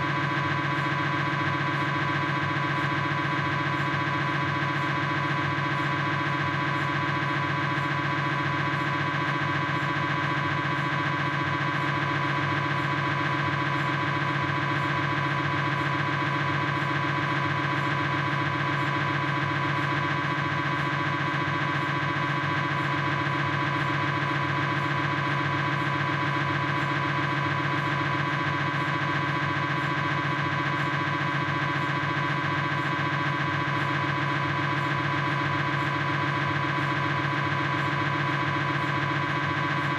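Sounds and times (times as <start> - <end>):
mri scanner pulsing drone: 0.0 - 39.9.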